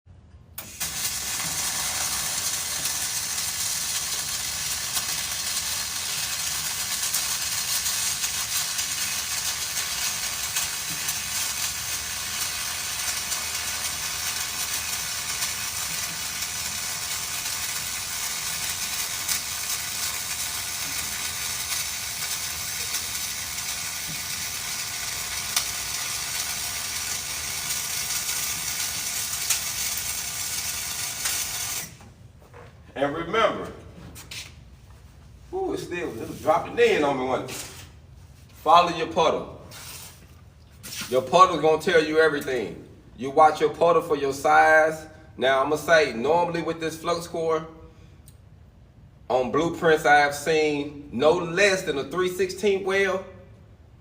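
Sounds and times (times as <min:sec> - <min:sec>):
welding arc crackling and sizzling: 0:00.6 - 0:32.1, 0:35.6 - 0:42.8.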